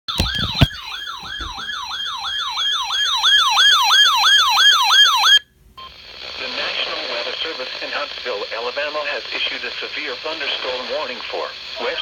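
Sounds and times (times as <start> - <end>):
electronic siren yelping: 0.2 - 5.4.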